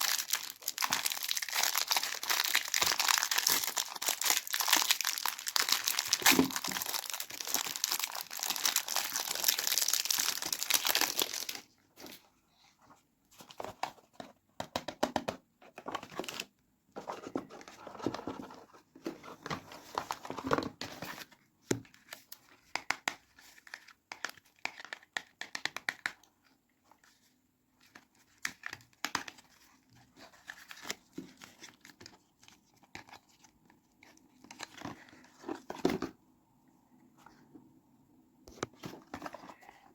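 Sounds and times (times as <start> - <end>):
packaging tearing and crinkling: 0.0 - 11.6.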